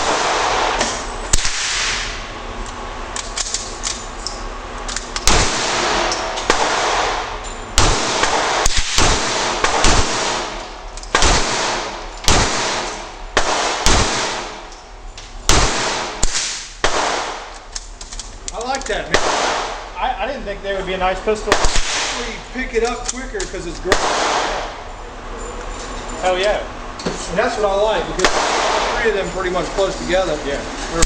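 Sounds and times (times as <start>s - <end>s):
rifle shots echoing: 0.0s - 2.2s, 5.2s - 14.7s, 15.4s - 17.6s, 19.1s - 20.0s, 21.5s - 22.4s, 23.9s - 24.8s, 28.2s - 29.1s.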